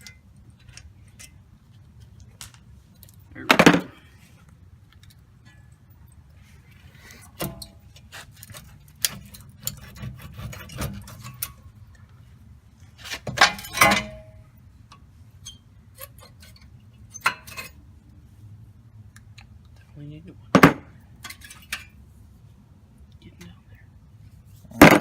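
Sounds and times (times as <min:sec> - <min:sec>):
tools and metal parts clinking: 0:13.2 - 0:14.4, 0:15.4 - 0:17.8, 0:21.2 - 0:22.0.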